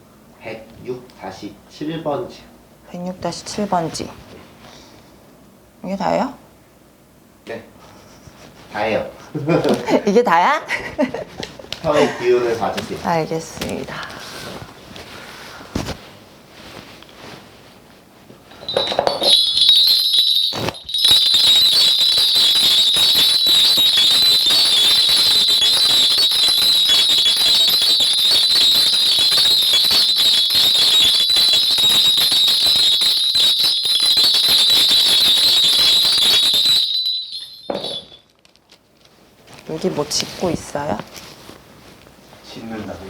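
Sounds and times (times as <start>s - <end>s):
bells jingling: 11.9s - 13.7s, 18.6s - 38.3s.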